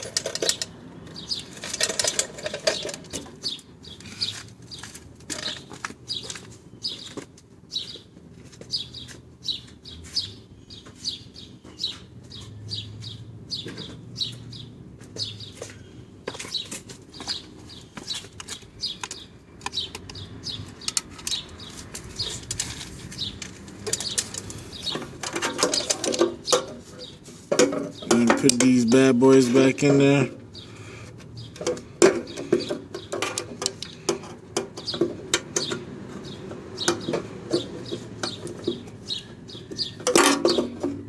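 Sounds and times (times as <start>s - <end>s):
clatter of small metal parts: 0.0s - 0.7s, 1.4s - 3.2s, 22.2s - 26.7s.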